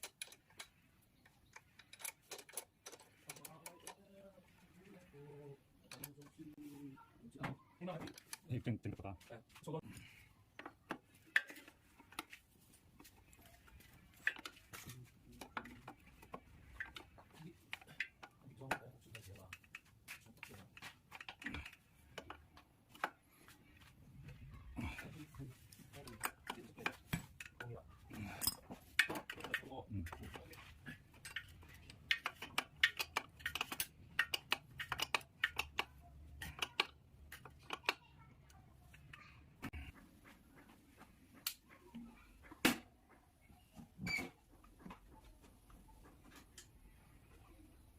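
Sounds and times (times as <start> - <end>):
small metal parts clicking: 0.0 - 4.2, 25.9 - 38.1
metal parts clinking: 1.5 - 4.0, 28.2 - 30.4.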